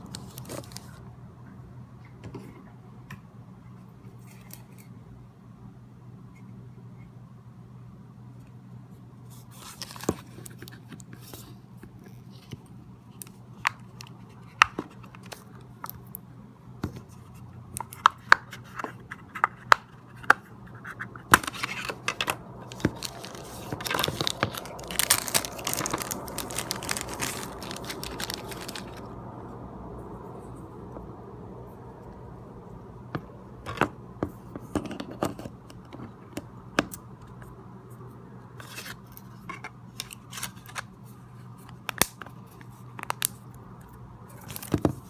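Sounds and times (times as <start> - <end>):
packaging rustling and tearing: 0.0 - 1.0, 9.5 - 11.4, 21.4 - 29.2
packaging clicks and taps: 21.3 - 29.0.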